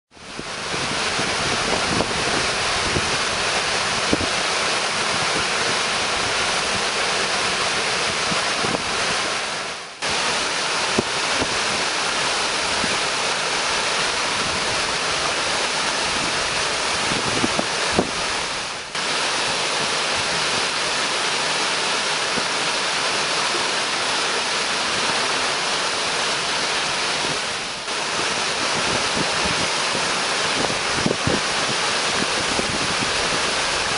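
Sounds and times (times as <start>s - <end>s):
waterfall roaring: 0.1s - 33.9s.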